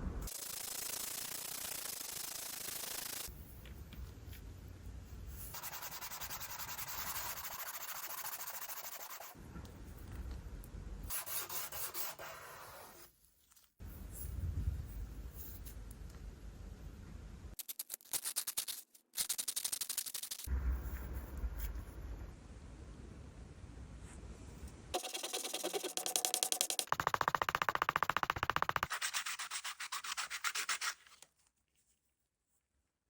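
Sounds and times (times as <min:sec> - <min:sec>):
sanding cardboard: 0:05.5 - 0:09.4, 0:25.0 - 0:31.1.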